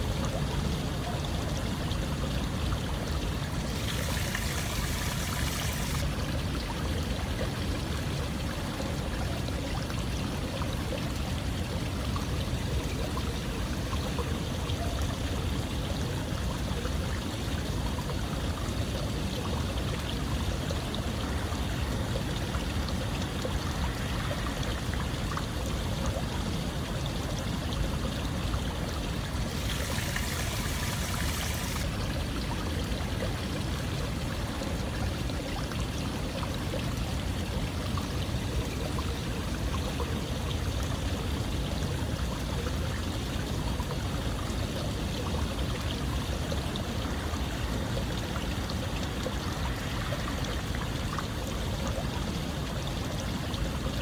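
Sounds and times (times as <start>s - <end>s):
running water flowing: 0.2s - 12.9s, 19.4s - 41.1s.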